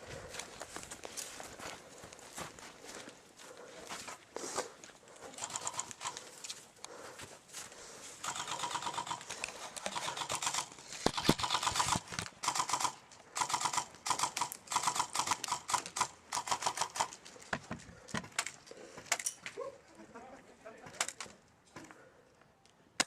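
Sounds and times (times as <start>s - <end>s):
airsoft guns firing bursts: 5.4s - 6.3s, 8.2s - 17.2s.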